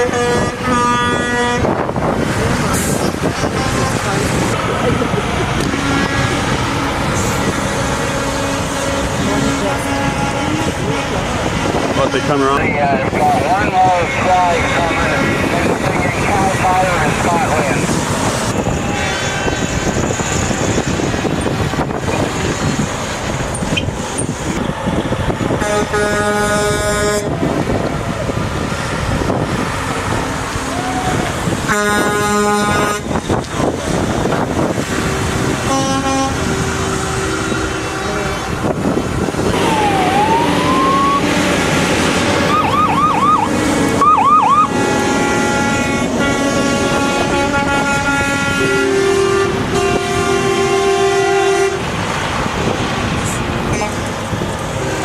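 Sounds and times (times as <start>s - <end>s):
truck air horns blasting: 0.0s - 21.3s, 25.4s - 27.7s, 29.5s - 52.0s
diesel engines running: 0.0s - 55.0s
siren wailing and whooping: 12.6s - 17.9s, 39.4s - 46.1s.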